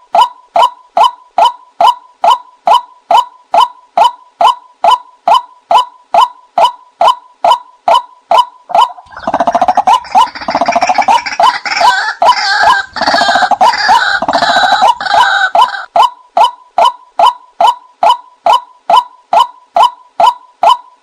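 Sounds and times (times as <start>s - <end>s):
waterhen kwak calls: 1.0s - 20.8s.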